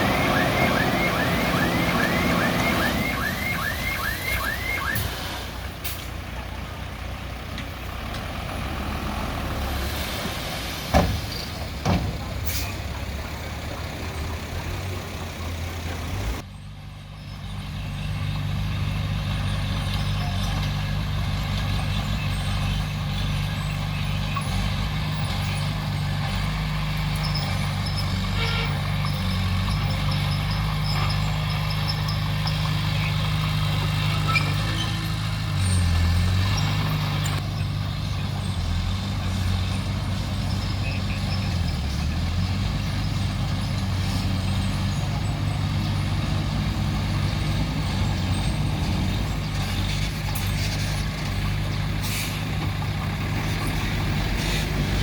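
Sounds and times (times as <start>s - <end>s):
diesel machinery engine running: 0.0s - 55.0s.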